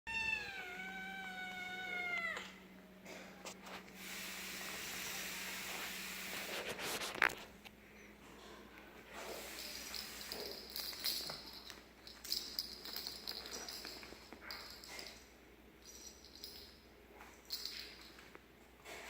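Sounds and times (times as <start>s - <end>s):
cat meowing: 0.1s - 2.6s.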